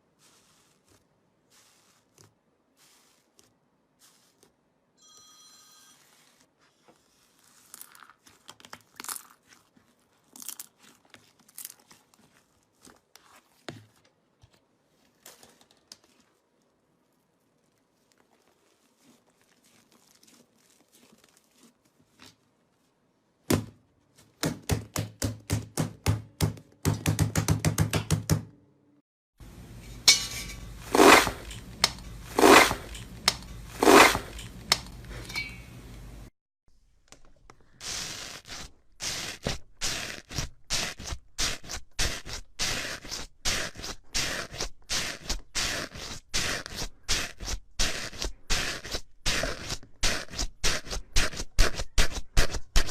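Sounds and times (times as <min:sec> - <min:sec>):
slime squelching: 0:07.0 - 0:14.0, 0:16.0 - 0:22.9.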